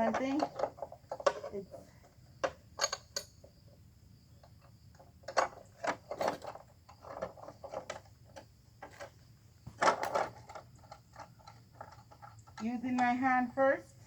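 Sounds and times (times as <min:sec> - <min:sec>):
metallic clicks and knocks: 0:02.4 - 0:03.5.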